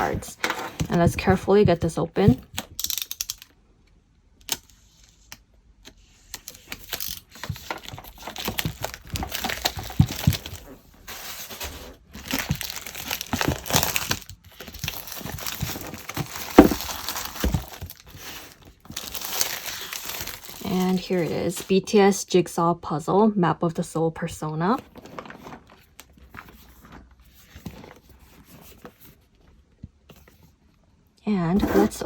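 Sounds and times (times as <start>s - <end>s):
packaging rustling and crackling: 6.4s - 21.7s, 24.8s - 30.5s.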